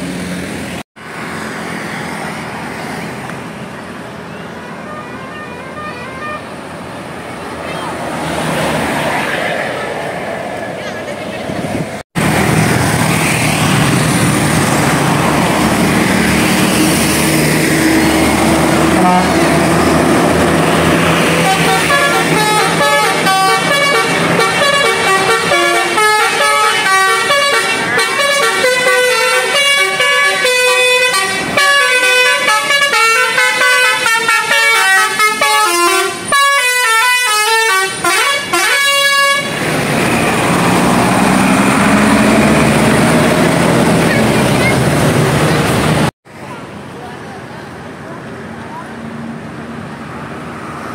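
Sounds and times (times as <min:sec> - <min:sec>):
bus musical horn melody: 0:04.5 - 0:06.6, 0:18.4 - 0:20.3, 0:21.1 - 0:39.6
diesel engine running: 0:39.4 - 0:48.8.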